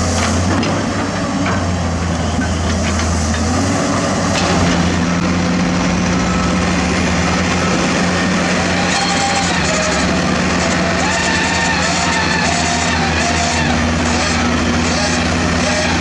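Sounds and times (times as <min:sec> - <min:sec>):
diesel machinery engine running: 0:00.0 - 0:16.0.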